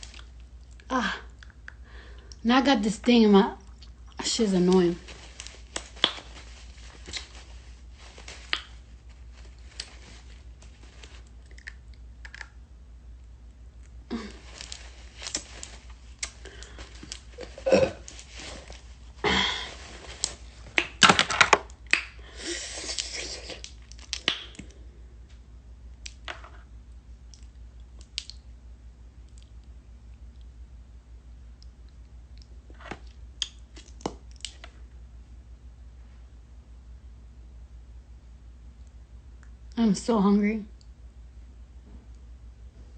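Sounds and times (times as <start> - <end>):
person eating wet chewing: 11.3 - 12.6.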